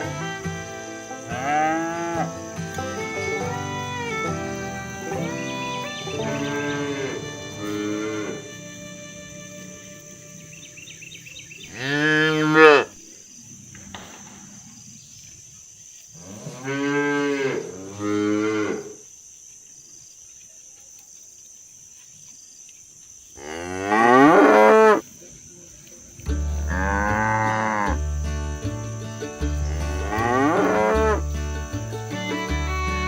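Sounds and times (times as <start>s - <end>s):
cows mooing: 0.0s - 10.8s, 11.7s - 12.9s, 16.2s - 18.9s, 23.4s - 25.0s, 26.6s - 28.0s, 29.6s - 31.2s.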